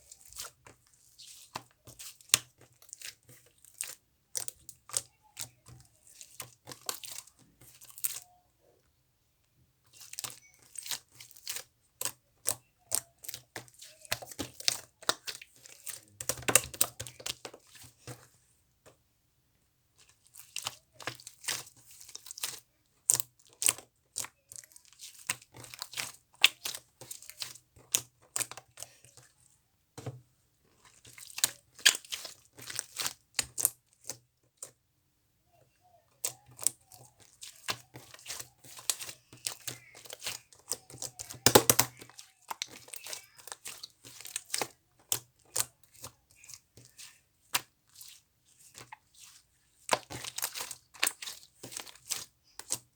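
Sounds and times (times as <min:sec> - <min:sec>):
slime squelching with wet pops: 0:30.8 - 0:34.8, 0:36.2 - 0:52.9.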